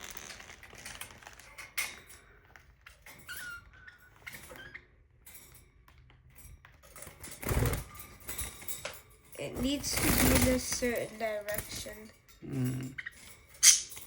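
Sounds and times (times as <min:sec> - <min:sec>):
parrot squeak: 0:12.9 - 0:14.0.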